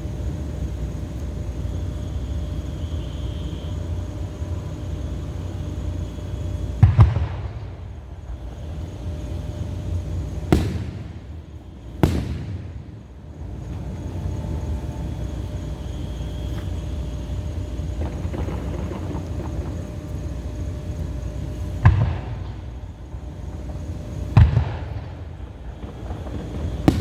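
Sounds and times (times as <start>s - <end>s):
fireworks booming: 6.0s - 27.0s
low rumble: 7.8s - 21.3s.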